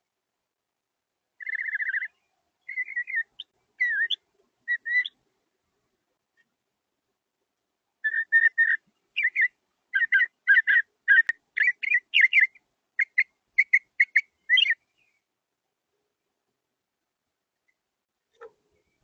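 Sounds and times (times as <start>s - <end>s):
bird singing whistled notes: 1.4s - 5.2s, 8.0s - 15.2s.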